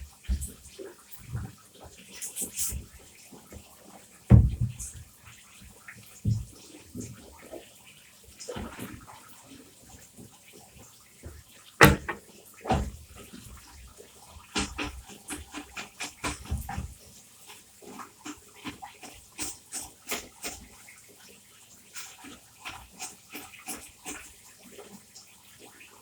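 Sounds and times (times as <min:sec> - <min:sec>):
plastic parts knocking against basin: 0:11.8 - 0:13.0.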